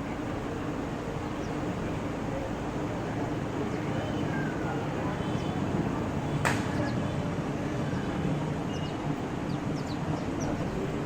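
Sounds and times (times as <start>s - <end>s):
low rumbling background noise: 0.0s - 11.0s
small birds chirping: 1.3s - 1.8s, 3.6s - 5.6s, 7.9s - 11.0s.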